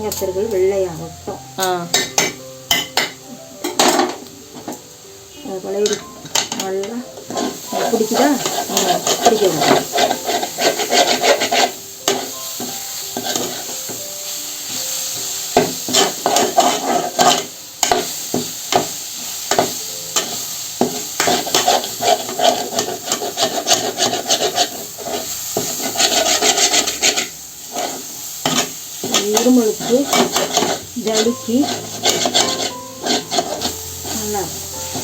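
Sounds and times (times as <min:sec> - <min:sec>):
faint sizzle: 0:00.0 - 0:35.0
ladle scraping a pan: 0:07.2 - 0:14.0, 0:15.6 - 0:18.0, 0:19.5 - 0:35.0.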